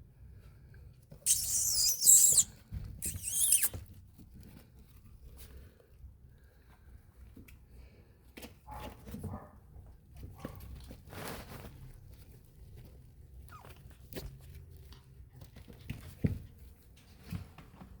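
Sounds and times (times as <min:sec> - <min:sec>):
dog short calls: 0:01.3 - 0:03.8.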